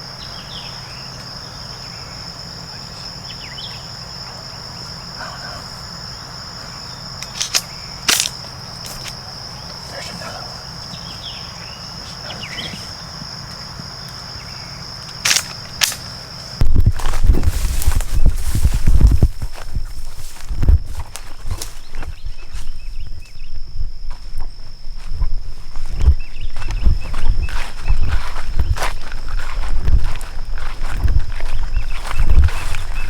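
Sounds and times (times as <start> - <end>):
insects droning: 0.0 - 33.0
sharp clicks: 7.2 - 9.1, 15.1 - 16.1.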